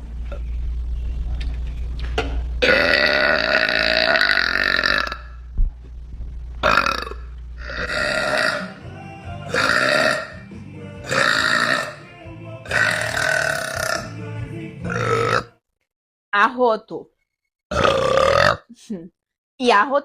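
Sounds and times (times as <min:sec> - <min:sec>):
woman burping: 0:02.6 - 0:05.4, 0:06.6 - 0:08.7, 0:09.5 - 0:10.4, 0:11.1 - 0:12.0, 0:12.7 - 0:14.1, 0:14.9 - 0:15.5, 0:17.7 - 0:18.8.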